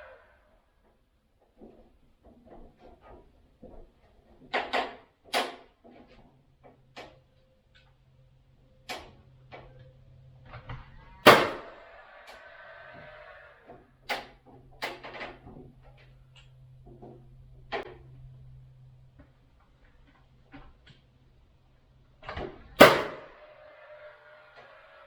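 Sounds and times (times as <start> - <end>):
nail gun shots: 4.7 - 5.6, 11.2 - 11.8, 22.8 - 23.4.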